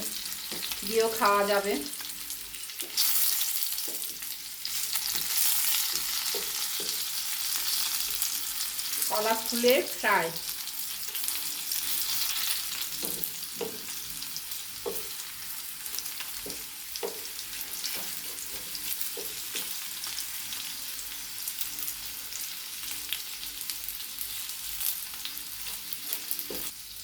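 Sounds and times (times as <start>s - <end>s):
deep-frying sizzle in oil: 0.0s - 27.0s.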